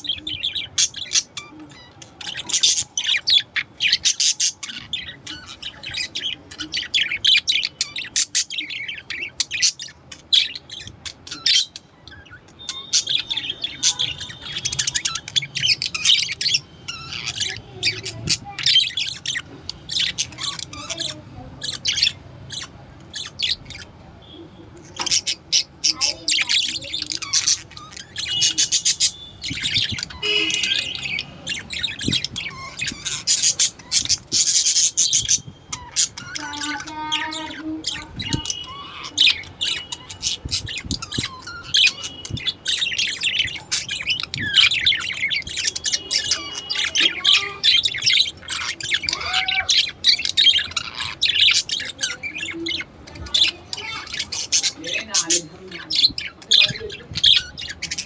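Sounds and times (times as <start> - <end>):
budgerigars chirping and warbling: 0.0 - 58.0.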